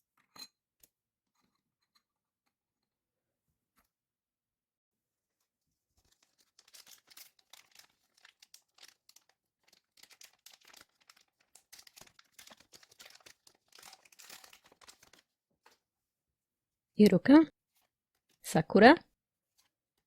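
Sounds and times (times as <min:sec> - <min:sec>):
wrapper crinkling and tearing: 0:06.0 - 0:15.3.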